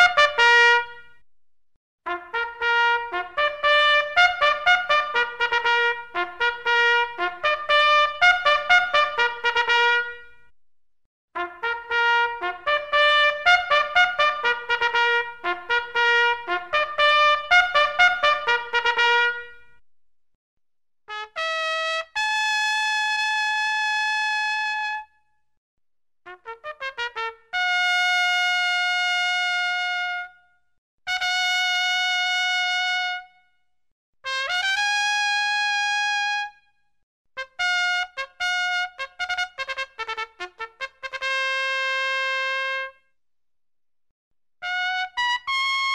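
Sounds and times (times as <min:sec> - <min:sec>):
solo trumpet playing: 0:00.0 - 0:01.2, 0:02.1 - 0:10.5, 0:11.4 - 0:19.8, 0:21.1 - 0:25.1, 0:26.3 - 0:30.4, 0:31.1 - 0:33.4, 0:37.4 - 0:43.0, 0:44.6 - 0:45.9.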